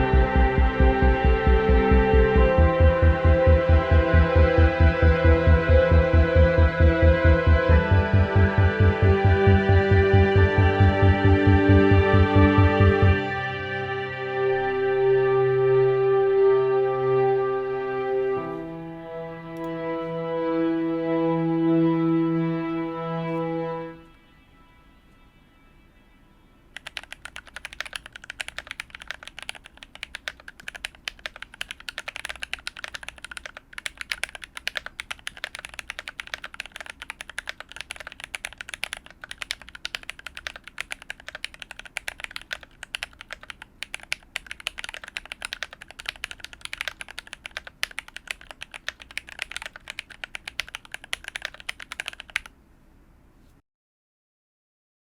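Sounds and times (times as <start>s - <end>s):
mechanical keyboard typing: 26.8s - 52.5s.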